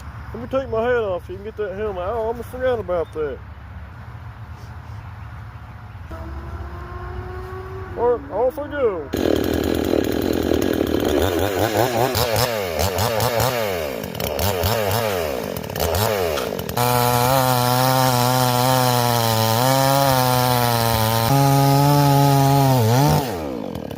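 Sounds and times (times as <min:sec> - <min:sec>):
chainsaw engine revving: 0:06.1 - 0:23.9.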